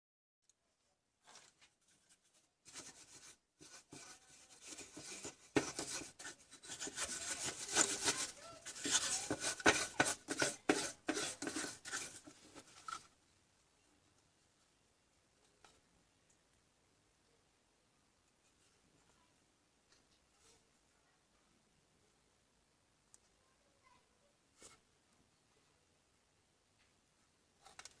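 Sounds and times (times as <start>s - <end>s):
rubbing and scraping handling noise: 1.1s - 13.2s, 24.5s - 24.9s.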